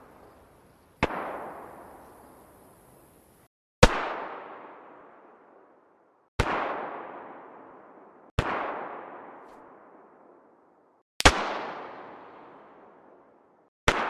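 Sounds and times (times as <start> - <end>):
distant rifle shots with echo: 6.4 - 10.2.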